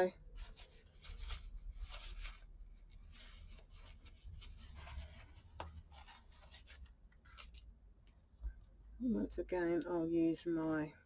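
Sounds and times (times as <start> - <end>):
paper rubbing and scratching: 0.3 - 7.7.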